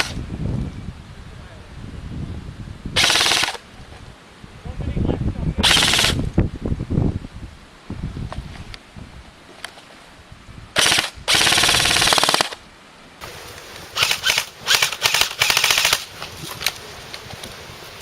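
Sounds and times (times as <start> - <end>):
airsoft gun bursts: 3.0 - 3.6, 5.6 - 6.2, 10.8 - 12.6, 14.0 - 16.1.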